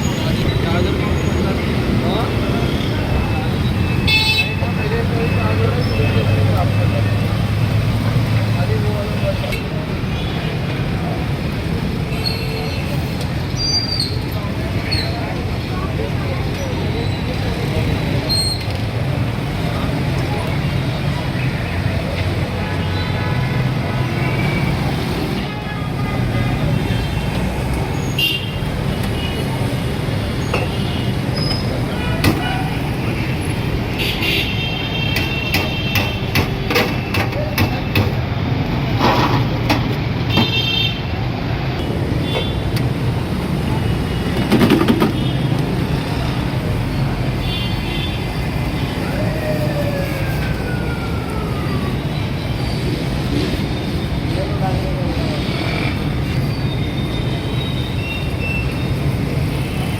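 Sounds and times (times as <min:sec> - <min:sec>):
road traffic rumble: 0:00.0 - 0:59.9
faint voices: 0:48.4 - 0:52.4.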